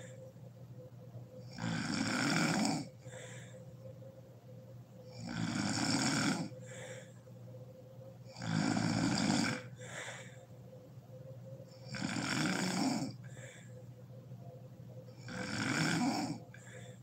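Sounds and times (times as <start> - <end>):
woman snoring loudly: 1.4 - 3.0, 5.1 - 6.5, 8.3 - 9.8, 11.8 - 13.2, 15.2 - 16.5.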